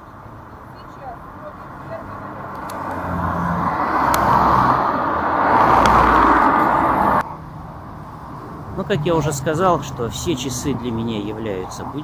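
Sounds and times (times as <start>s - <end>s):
motor vehicle driving by: 1.4s - 7.2s.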